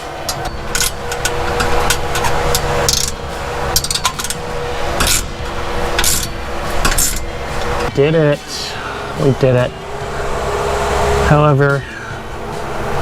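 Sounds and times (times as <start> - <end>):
hand tools clanking on metal: 0.0 - 9.8
steady hum: 0.0 - 13.0.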